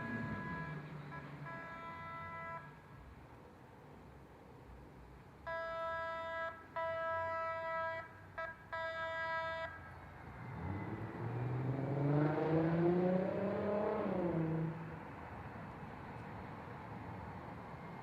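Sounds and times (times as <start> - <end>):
trolley horn blasts: 0.0 - 2.8, 5.5 - 9.8.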